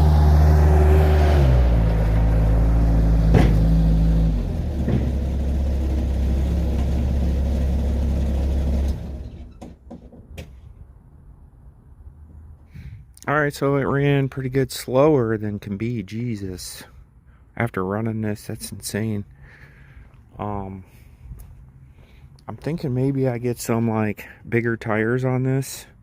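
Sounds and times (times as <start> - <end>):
diesel engine running: 0.0 - 9.7
sharp knock: 3.3 - 3.8.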